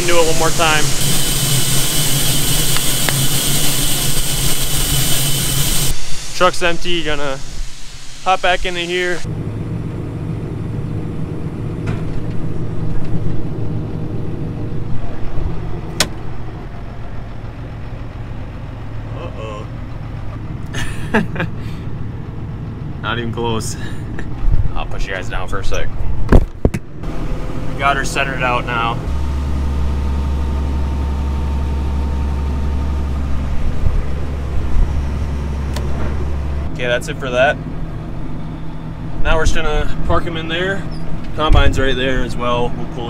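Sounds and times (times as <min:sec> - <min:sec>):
farm vehicle engine idling: 0:00.0 - 0:06.0, 0:08.9 - 0:26.2, 0:26.9 - 0:43.0
low bumps: 0:08.6 - 0:19.2.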